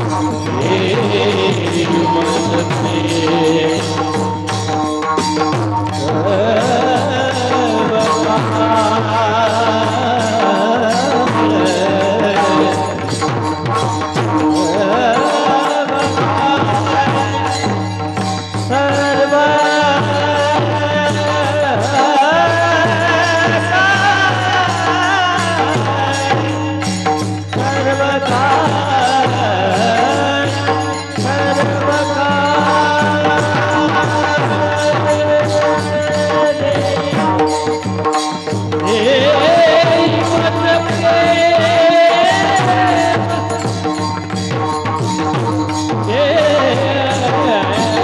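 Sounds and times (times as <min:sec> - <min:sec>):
hand drum: 0:00.0 - 0:48.0
held accompanying chords: 0:00.0 - 0:48.0
person singing: 0:00.0 - 0:48.0.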